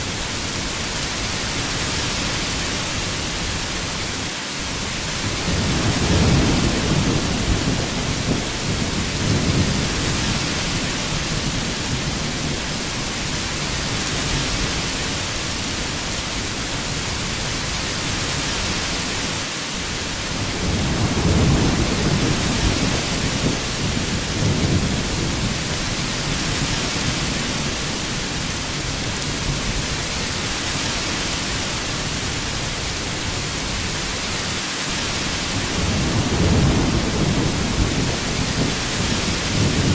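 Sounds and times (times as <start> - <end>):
heavy rain falling: 0.0 - 39.9
thunder rumbling: 5.2 - 14.0, 20.3 - 30.0, 35.6 - 39.9.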